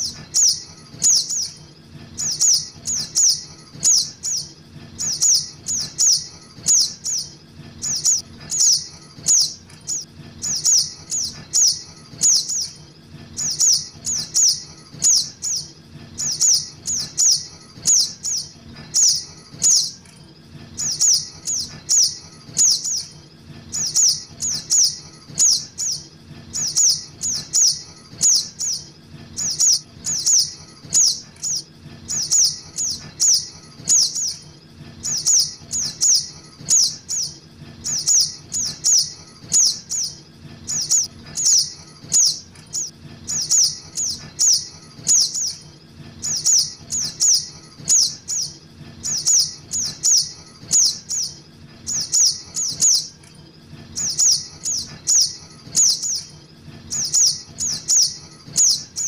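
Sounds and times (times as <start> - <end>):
bird chirps sliding downward: 2.2 - 12.8, 13.4 - 20.0, 26.6 - 34.4, 35.1 - 45.6, 49.1 - 53.1.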